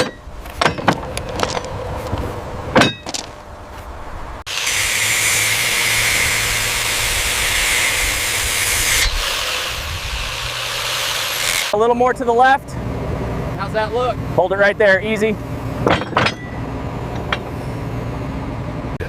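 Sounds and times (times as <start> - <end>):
loud hissing machine noise: 4.5 - 11.8.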